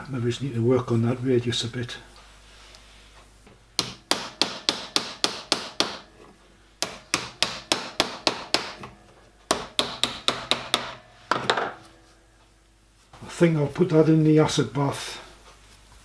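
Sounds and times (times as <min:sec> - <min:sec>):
hammer striking copper: 0:03.8 - 0:06.1, 0:06.8 - 0:11.9.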